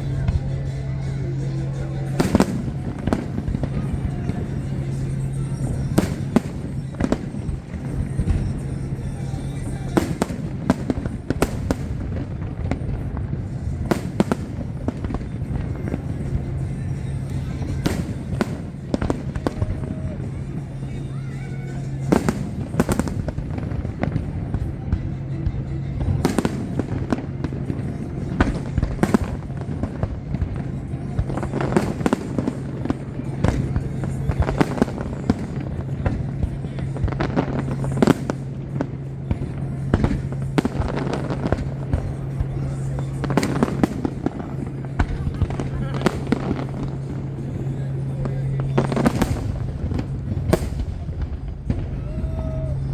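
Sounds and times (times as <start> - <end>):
fireworks shells bursting: 0.0 - 52.0
low rumble: 0.0 - 52.9
steady low hum: 0.0 - 52.9.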